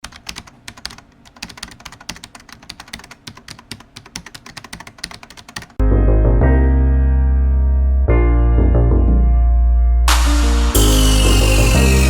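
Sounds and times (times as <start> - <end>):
keyboard typing clicks: 0.0 - 5.8.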